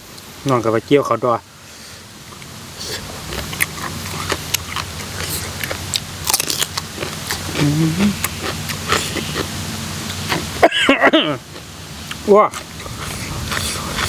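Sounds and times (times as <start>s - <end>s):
person chewing crunchy food: 2.8s - 10.6s, 11.4s - 14.0s
person humming: 7.5s - 8.3s.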